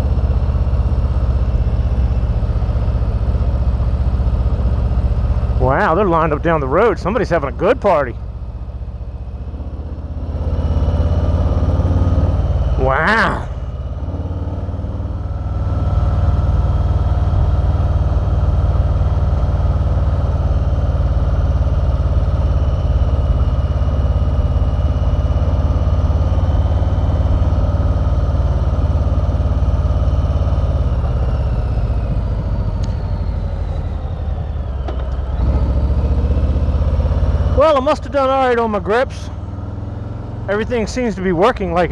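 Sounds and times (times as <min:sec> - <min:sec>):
motorcycle engine rumbling: 0:01.8 - 0:14.1, 0:30.6 - 0:41.9.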